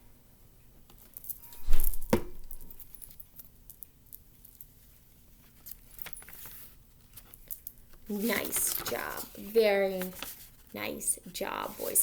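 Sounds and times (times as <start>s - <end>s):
paper rustling: 8.0s - 12.0s.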